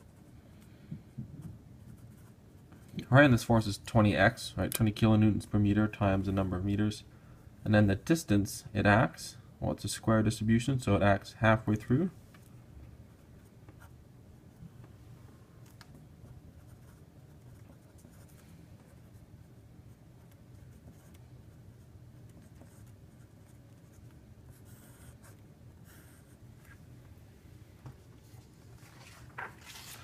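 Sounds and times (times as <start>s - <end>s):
low steady hum: 0.0s - 30.0s
pen scratching on paper: 1.8s - 3.0s, 16.2s - 19.2s, 19.9s - 26.8s.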